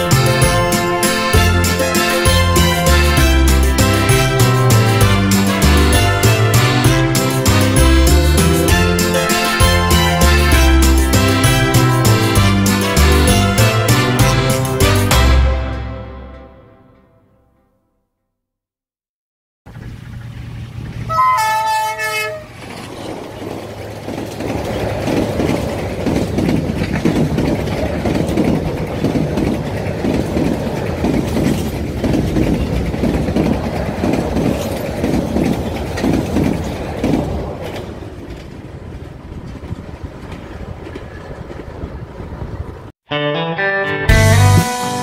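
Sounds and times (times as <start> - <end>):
train horn: 0.0 - 16.4, 21.1 - 22.7
train wheels clattering: 21.1 - 42.8.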